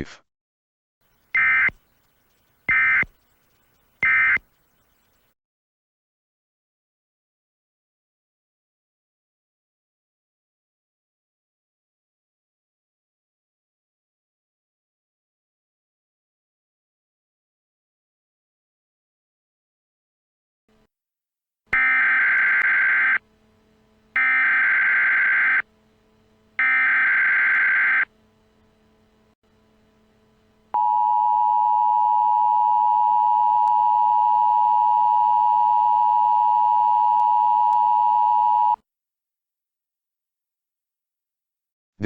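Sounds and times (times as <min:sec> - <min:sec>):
buzzing digital data bursts: 0:01.1 - 0:05.2, 0:21.8 - 0:23.3, 0:24.1 - 0:28.2.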